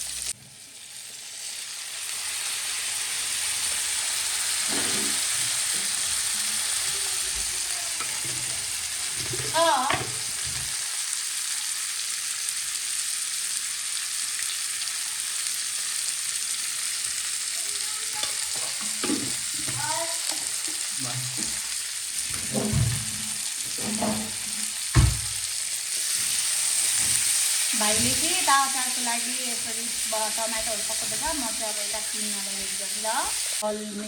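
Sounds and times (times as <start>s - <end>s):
onions sizzling in oil: 0.0s - 34.0s
spoon knocking against pan: 9.2s - 10.7s, 18.2s - 21.6s.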